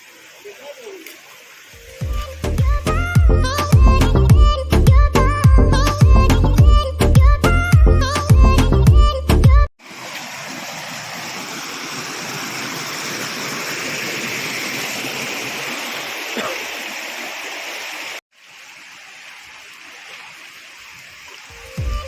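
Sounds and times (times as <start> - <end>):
flowing water rushing: 0.0 - 3.7, 9.8 - 22.0.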